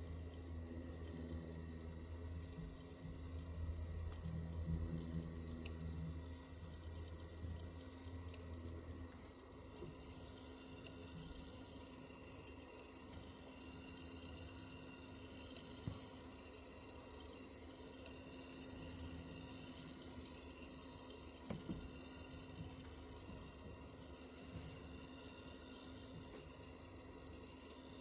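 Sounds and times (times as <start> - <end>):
cooling fan hiss: 0.0 - 28.0
faint ticks: 4.0 - 5.9, 8.1 - 8.5.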